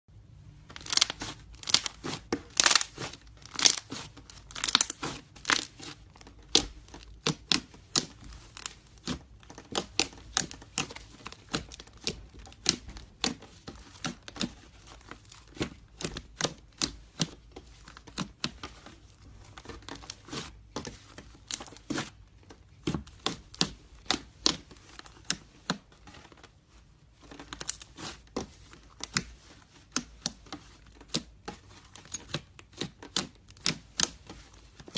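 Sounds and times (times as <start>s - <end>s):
slime popping and crackling: 0.7s - 13.4s.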